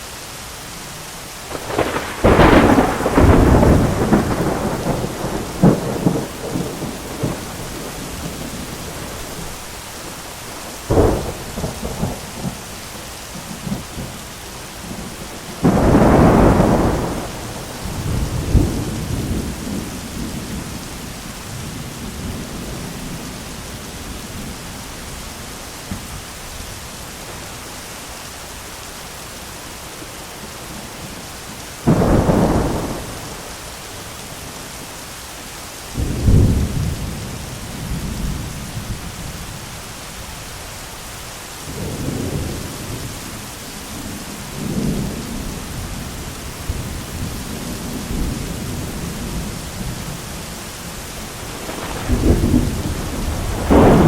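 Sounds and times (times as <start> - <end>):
steady rain: 0.0 - 54.0
thunder rumbling: 1.4 - 14.2, 14.8 - 25.2, 31.8 - 34.0, 36.0 - 39.8, 41.7 - 54.0.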